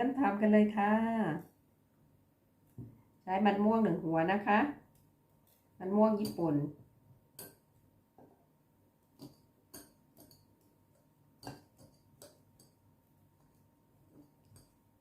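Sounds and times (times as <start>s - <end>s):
kitchen utensils tapping and clicking: 6.1s - 6.6s, 7.4s - 7.7s, 9.2s - 12.8s, 13.4s - 14.8s.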